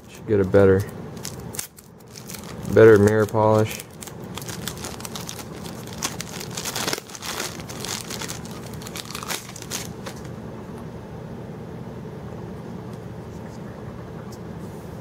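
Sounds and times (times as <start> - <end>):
packaging crinkling and rustling: 0.1 - 10.3.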